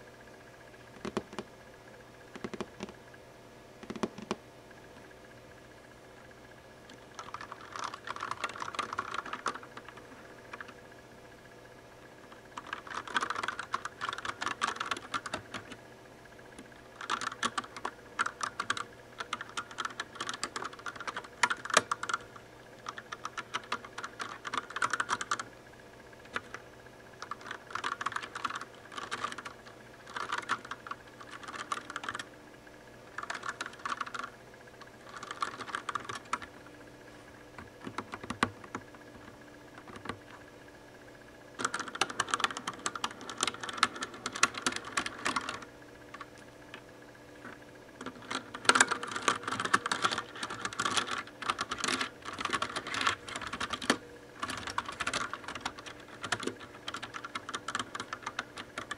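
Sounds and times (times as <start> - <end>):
mechanical keyboard typing: 2.4 - 2.9, 3.8 - 4.4, 6.9 - 10.8, 12.4 - 15.8, 16.9 - 25.5, 26.2 - 26.6, 27.2 - 32.3, 33.1 - 34.4, 35.0 - 36.5, 37.6 - 38.8, 39.8 - 40.3, 41.6 - 46.3, 48.0 - 58.9.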